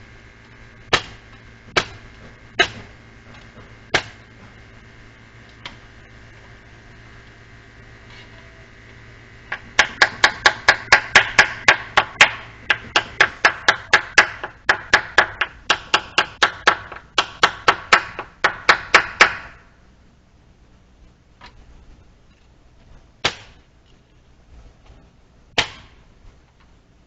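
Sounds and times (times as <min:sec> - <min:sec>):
hammer driving nails into wood: 0:00.9 - 0:01.2, 0:02.6 - 0:02.9, 0:09.5 - 0:19.6.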